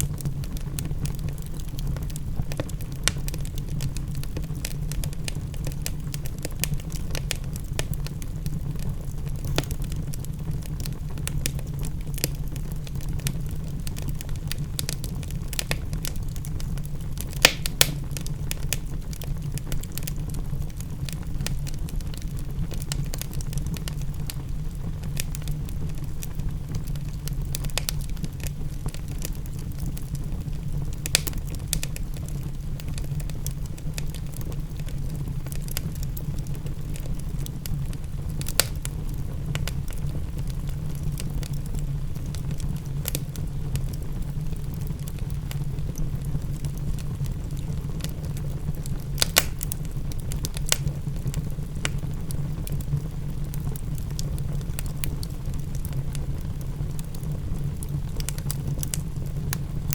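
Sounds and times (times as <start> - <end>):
fire pops: 0.0 - 59.9
wood fire crackling: 0.0 - 59.9.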